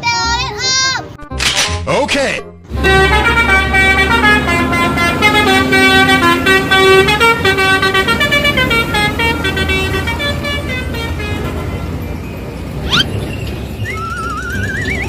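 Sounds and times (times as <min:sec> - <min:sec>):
musical bus air horn: 0:02.7 - 0:12.0.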